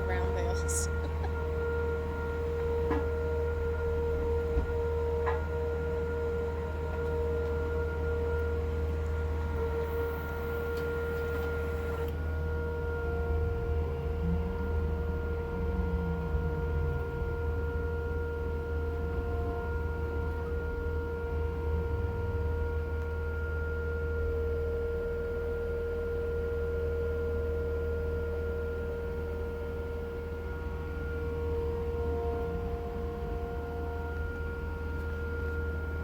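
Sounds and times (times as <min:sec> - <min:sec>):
skid loader engine drone: 0:00.0 - 0:36.0
steady high whine: 0:00.0 - 0:36.0.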